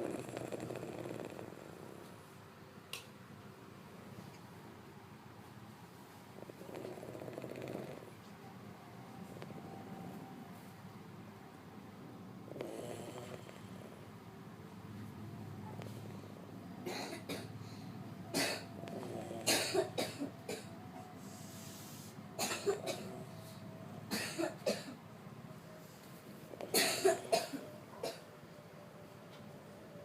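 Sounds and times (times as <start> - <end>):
low snoring: 0.0 - 2.4, 6.3 - 8.3, 12.4 - 14.1, 18.8 - 19.5
person coughing: 16.9 - 17.5, 18.3 - 18.7, 19.4 - 20.7, 22.4 - 23.2, 24.1 - 25.0, 26.6 - 28.2.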